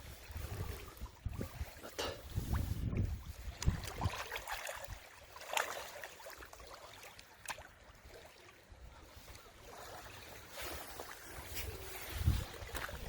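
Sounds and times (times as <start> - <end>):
wind noise: 0.0 - 5.0, 10.6 - 13.0
sea water lapping: 0.0 - 13.0.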